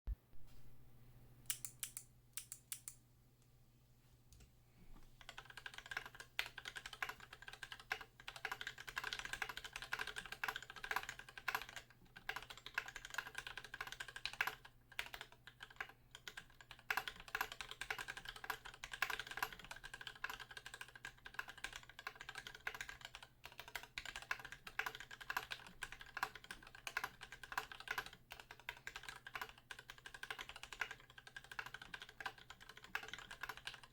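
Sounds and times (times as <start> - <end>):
clicky switch clicks: 1.5 - 3.0
typing on mechanical keyboard: 5.2 - 33.9.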